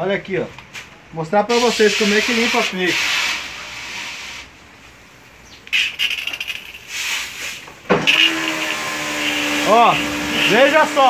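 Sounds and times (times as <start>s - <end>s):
pressure washer hissing: 1.5s - 4.5s, 5.7s - 11.0s
electric motor humming: 8.0s - 11.0s.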